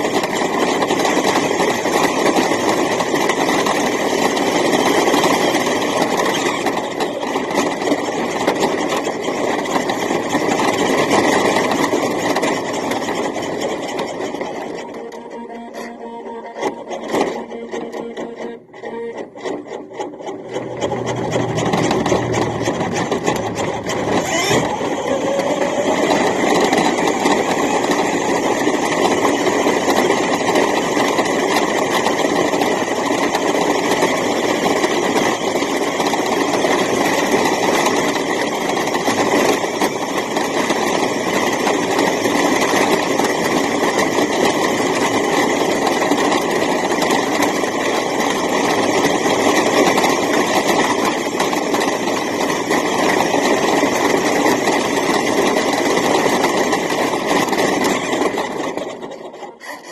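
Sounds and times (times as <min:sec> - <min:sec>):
toy truck electric motor running: 0:00.0 - 0:59.9
clicks: 0:12.2 - 0:27.0.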